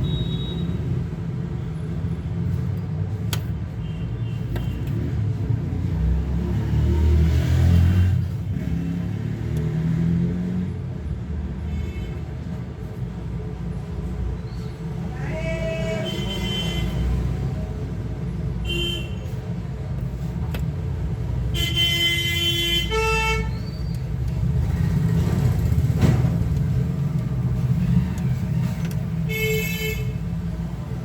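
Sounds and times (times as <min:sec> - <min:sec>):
road traffic: 0:00.0 - 0:31.0
vehicle horns honking: 0:21.5 - 0:23.6, 0:29.2 - 0:30.3.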